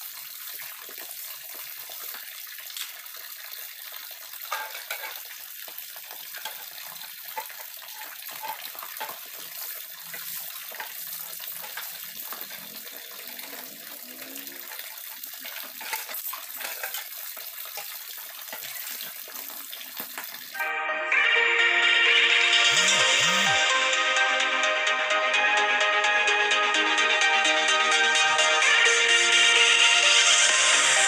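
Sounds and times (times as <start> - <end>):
water running into a sink: 0.0 - 20.6
music: 20.6 - 31.0.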